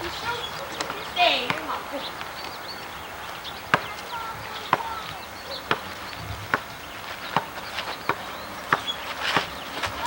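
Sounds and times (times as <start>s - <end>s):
basketball bouncing on pavement: 0.9s - 2.3s, 3.6s - 10.0s.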